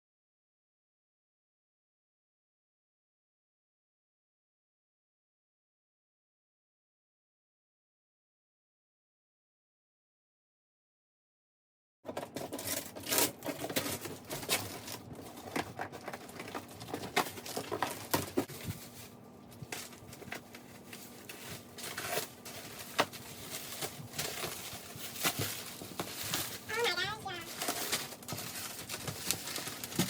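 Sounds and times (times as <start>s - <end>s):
packaging crinkling and rustling: 12.1s - 30.0s.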